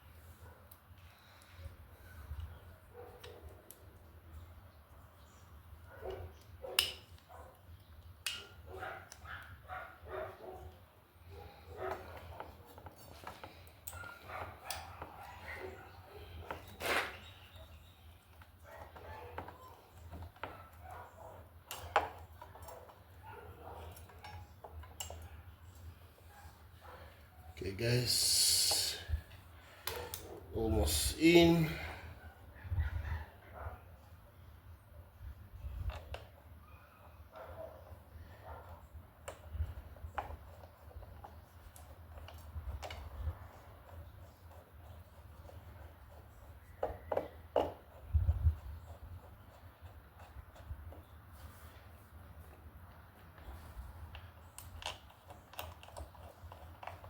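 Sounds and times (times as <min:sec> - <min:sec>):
metal parts clicking and knocking: 0:53.4 - 0:57.0.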